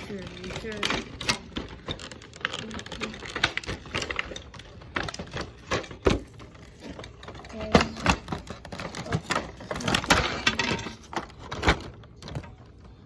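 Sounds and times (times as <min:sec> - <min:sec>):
plastic toy pieces clicking: 0:00.0 - 0:12.8.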